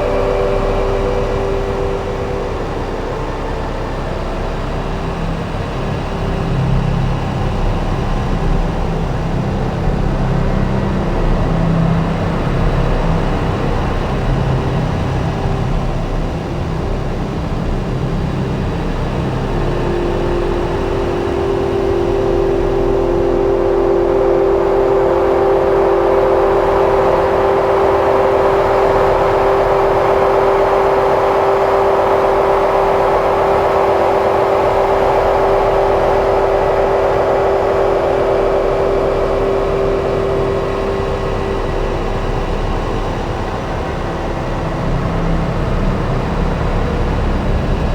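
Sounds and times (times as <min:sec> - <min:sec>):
electronic synthesizer drone: 0:00.0 - 0:47.9
grainy noise texture: 0:19.6 - 0:43.2.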